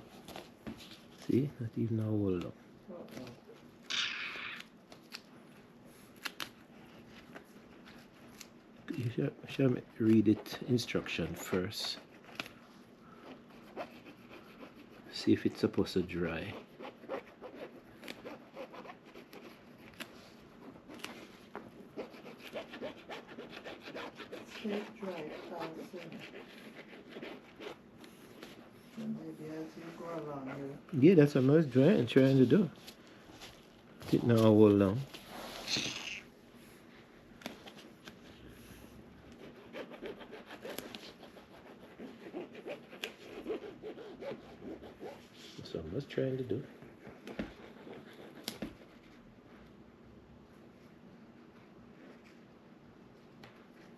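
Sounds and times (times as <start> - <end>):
rubbing and scratching on leather: 13.2 - 28.7, 39.3 - 49.2.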